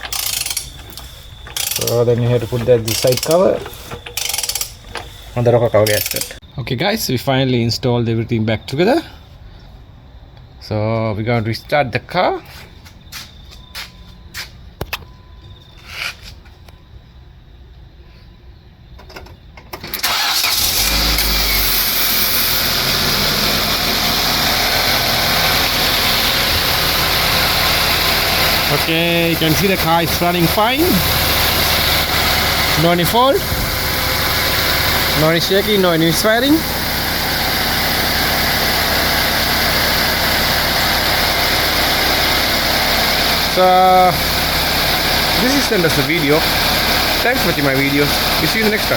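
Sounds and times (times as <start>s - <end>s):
car engine cranking and idling: 0.0s - 6.5s, 19.9s - 48.9s.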